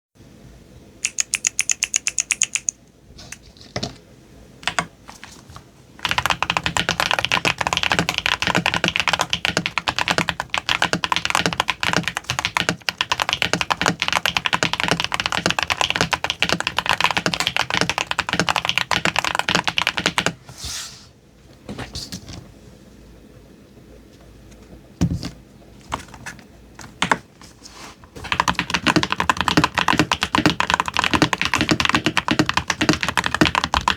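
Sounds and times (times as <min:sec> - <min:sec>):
mechanical keyboard typing: 0:01.0 - 0:02.8, 0:04.6 - 0:04.9, 0:06.0 - 0:20.4, 0:28.2 - 0:33.9.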